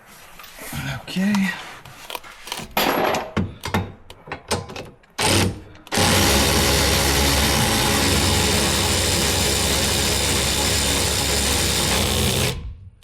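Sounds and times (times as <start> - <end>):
tools clicking and knocking: 2.1 - 6.0
power tool driving bolt: 4.5 - 12.8.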